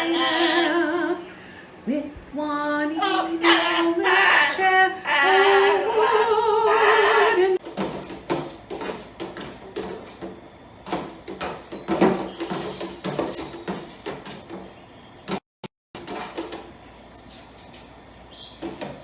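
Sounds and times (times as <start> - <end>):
person singing with vibrato: 0.0 - 7.6.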